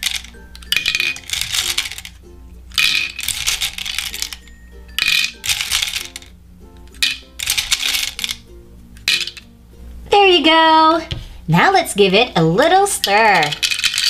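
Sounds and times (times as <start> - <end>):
candies clattering into teacup: 0.0 - 6.3, 6.9 - 8.4, 9.0 - 9.5, 12.9 - 14.0
background music: 0.0 - 14.0.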